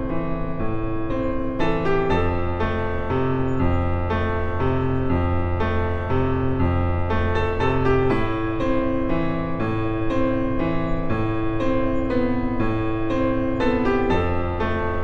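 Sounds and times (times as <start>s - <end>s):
slow piano chords: 0.0s - 15.0s.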